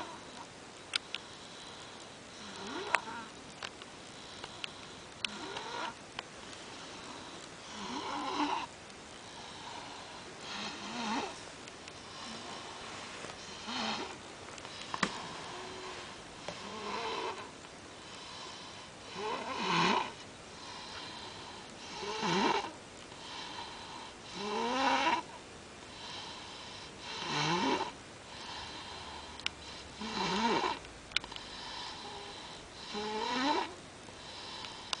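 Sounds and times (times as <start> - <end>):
child snoring: 0.0 - 0.4, 1.4 - 3.4, 5.2 - 6.0, 6.8 - 8.7, 9.3 - 11.4, 12.0 - 12.8, 13.4 - 14.2, 14.9 - 25.4, 26.0 - 30.8, 31.4 - 35.0
soft breathing: 0.0 - 24.4, 25.2 - 27.1, 28.2 - 35.0.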